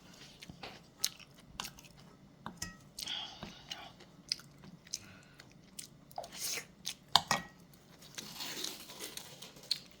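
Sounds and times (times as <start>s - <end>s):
chewing and mouth noises: 0.1s - 2.1s, 2.9s - 7.1s.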